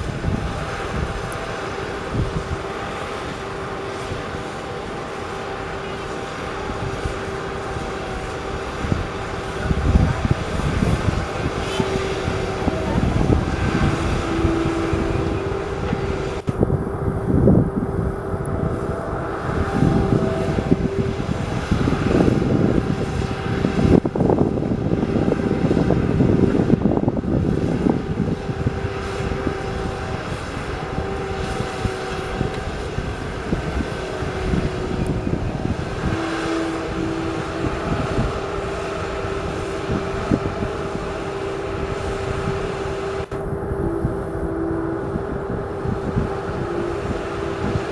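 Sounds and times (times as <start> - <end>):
constant machine whine: 0.0 - 47.9
construction machinery engine rumble: 0.0 - 47.9.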